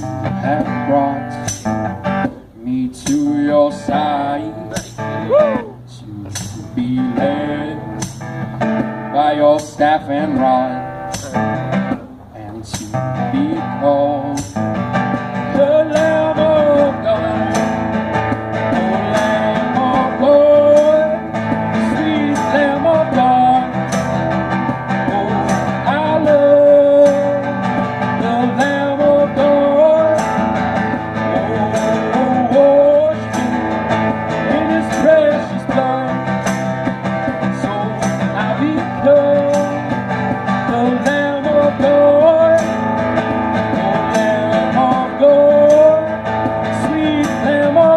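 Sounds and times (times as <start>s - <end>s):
guitar accompaniment: 0.0s - 47.9s
light steady beat: 0.0s - 47.9s
sliding lead melody: 12.9s - 47.9s.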